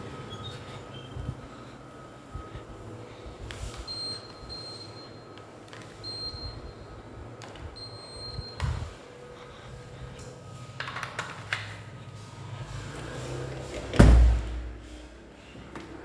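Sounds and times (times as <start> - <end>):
air conditioner beeps: 0.0 - 11.7
low thump: 14.0 - 15.0.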